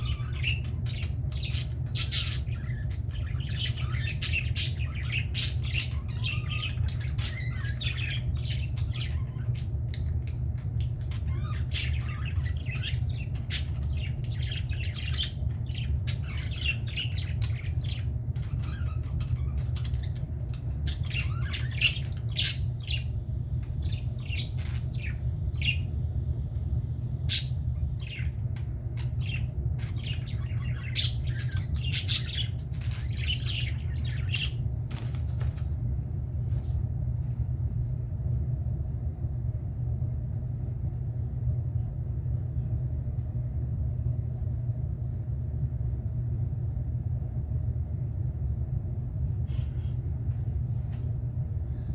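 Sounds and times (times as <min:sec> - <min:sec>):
budgerigars chirping and squawking: 0:00.0 - 0:26.0, 0:27.2 - 0:35.7
steady low rumble: 0:00.0 - 0:51.9.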